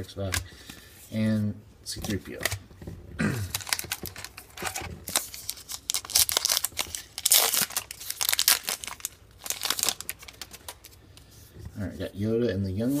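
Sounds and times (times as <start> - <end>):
cards rustling: 1.9 - 2.9, 3.5 - 11.3
wrapper tearing and crinkling: 3.4 - 11.0.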